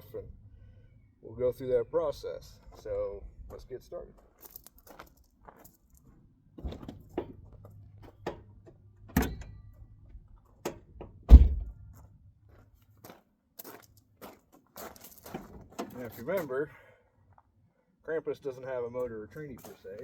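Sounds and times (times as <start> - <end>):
car hood clicks and clunks: 8.0 - 9.7, 10.6 - 11.8
heavy low thud: 11.2 - 11.8.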